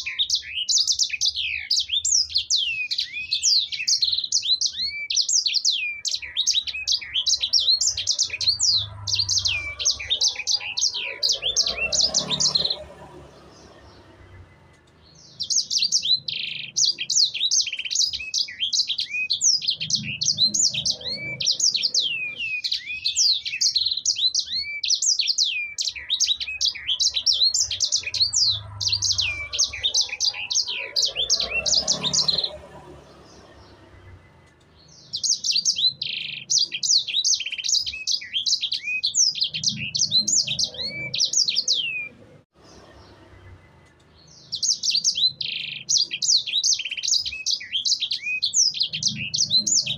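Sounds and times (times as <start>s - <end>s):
songbird singing: 0.0s - 49.9s.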